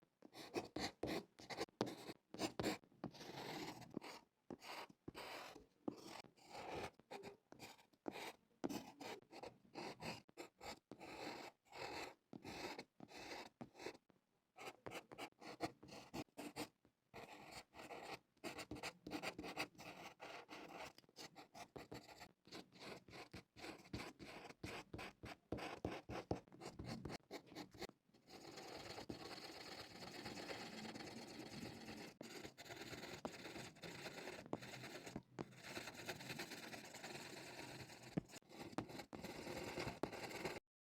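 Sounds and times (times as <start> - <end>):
pencil scratching on paper: 0.3 - 14.0, 14.6 - 40.6.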